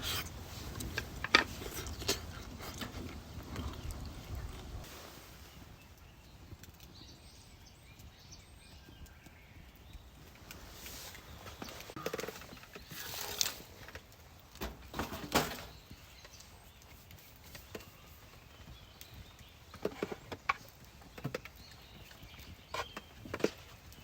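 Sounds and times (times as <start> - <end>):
light knocks and clatters: 10.4 - 24.0.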